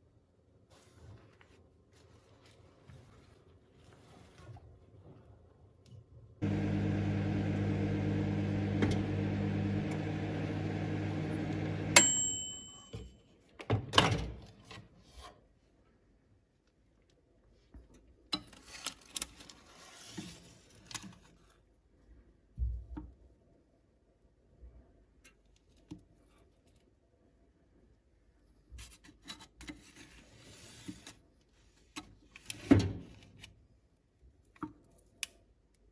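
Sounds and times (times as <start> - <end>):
microwave click: 6.4 - 12.8
microwave oven humming: 6.4 - 12.9.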